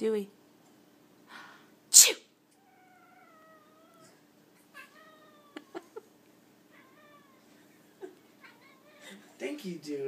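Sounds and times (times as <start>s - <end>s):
cat meowing: 2.6s - 5.8s, 6.7s - 7.6s, 8.4s - 9.2s.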